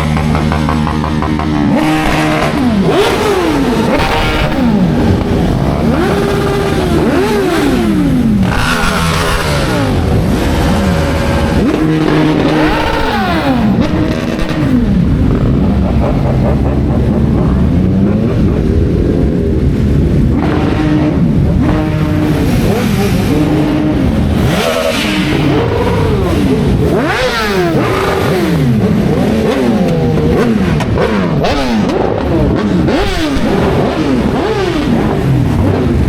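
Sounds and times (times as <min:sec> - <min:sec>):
motorcycle engines revving: 0:00.0 - 0:36.0.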